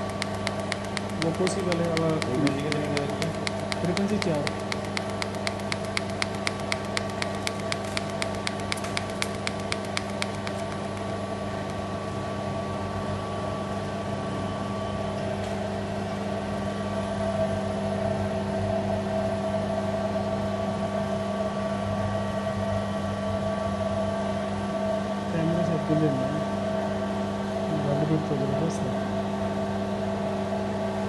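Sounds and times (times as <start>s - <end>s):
rapid even ticking: 0.0s - 11.8s
welding set electrical hum: 0.0s - 13.8s.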